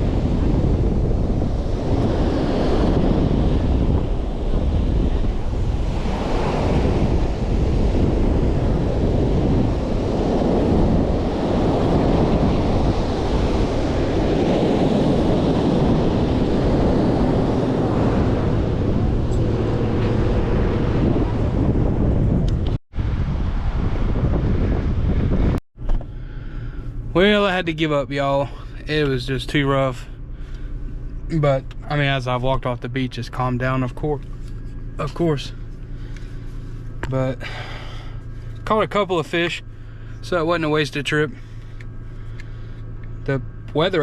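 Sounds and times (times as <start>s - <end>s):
breaking surf: 0.0s - 25.2s
wind buffeting the microphone: 0.0s - 29.5s.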